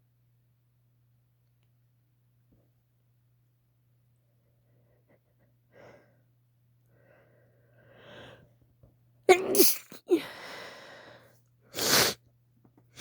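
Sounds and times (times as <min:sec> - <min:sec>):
woman sneezing: 0:09.3 - 0:10.3
sharp burst of breath: 0:09.6 - 0:12.2.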